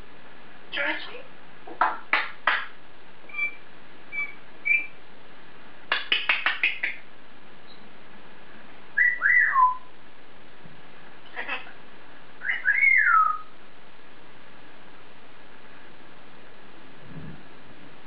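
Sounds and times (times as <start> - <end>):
parrot chirping: 3.3 - 5.0, 9.0 - 9.9, 11.2 - 11.8, 12.4 - 13.6
parrot whistle rising and falling: 3.3 - 5.0, 9.0 - 9.9, 12.4 - 13.5.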